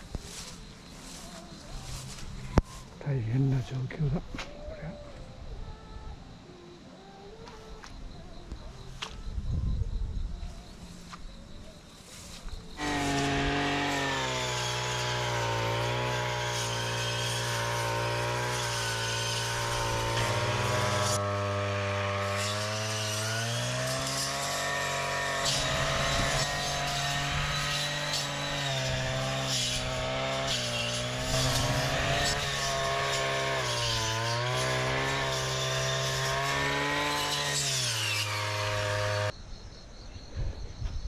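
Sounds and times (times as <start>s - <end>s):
chainsaw cutting wood: 12.8s - 39.3s.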